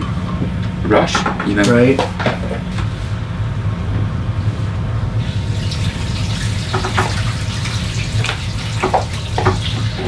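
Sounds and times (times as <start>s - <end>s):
constant low hum: 0.0s - 10.0s
tap water running into sink: 5.2s - 10.0s.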